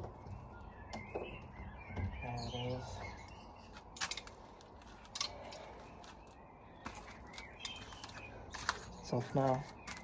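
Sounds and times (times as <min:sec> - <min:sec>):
faint bird chirps: 0:00.0 - 0:03.8.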